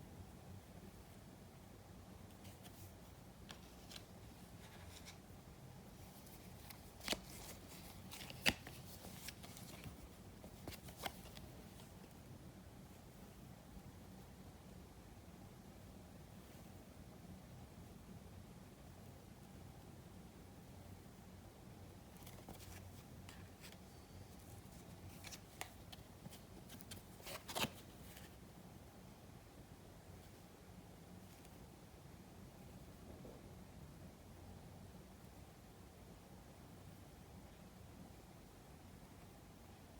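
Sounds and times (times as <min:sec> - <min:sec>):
trading cards clicking and rustling: 0:06.5 - 0:10.0, 0:24.8 - 0:28.3.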